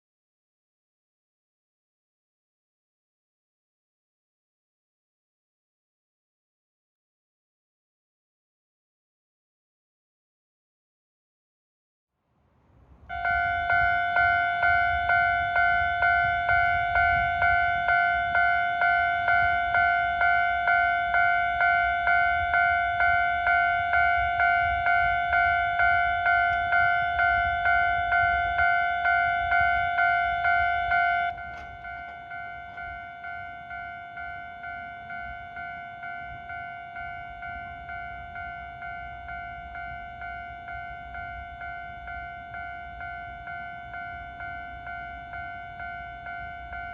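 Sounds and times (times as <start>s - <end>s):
level crossing alarm bell: 13.1s - 46.9s.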